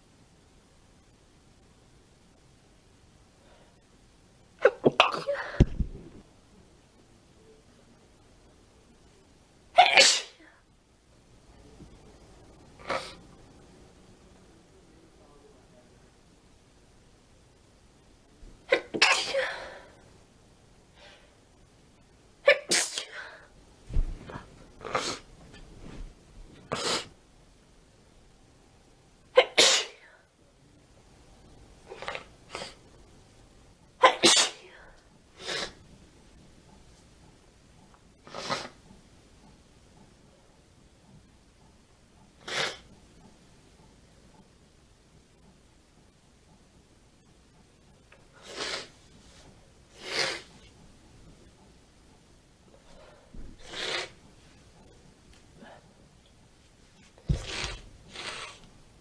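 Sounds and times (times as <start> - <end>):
woman sneezing: 4.6 - 5.7, 29.4 - 30.1.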